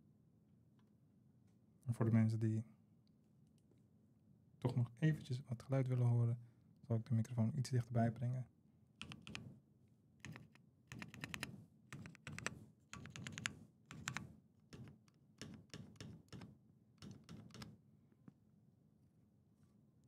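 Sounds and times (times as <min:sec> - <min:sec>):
mechanical keyboard key clicks: 0:09.0 - 0:09.4, 0:10.2 - 0:14.2, 0:14.8 - 0:17.7.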